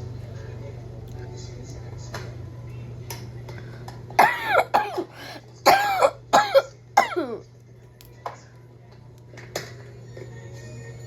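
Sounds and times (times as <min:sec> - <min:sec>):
woman coughing harshly: 0:04.2 - 0:07.4.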